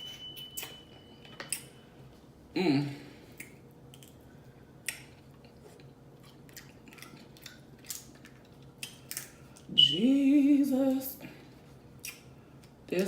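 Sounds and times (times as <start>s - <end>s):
chewing and lip-smacking: 4.8s - 9.7s, 12.0s - 12.8s.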